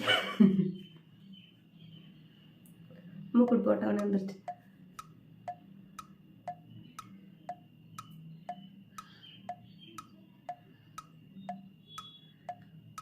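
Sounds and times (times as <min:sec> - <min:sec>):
clock ticking: 0:03.4 - 0:13.0.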